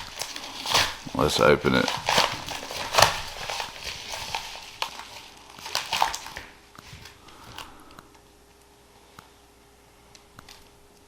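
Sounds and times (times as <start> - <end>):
packaging crinkling and tearing: 0.0 - 8.1.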